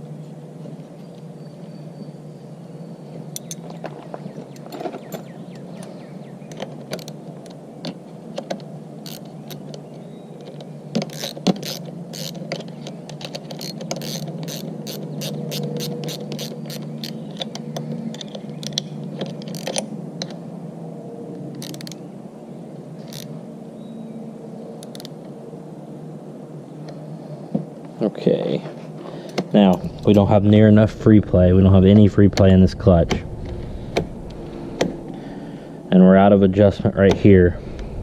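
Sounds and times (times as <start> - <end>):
steady low hum: 0.0 - 38.0
ratchet wrench clicking: 9.0 - 9.6, 11.1 - 12.4, 13.5 - 17.3, 18.2 - 19.8, 21.6 - 22.0, 23.1 - 23.3, 24.8 - 25.1.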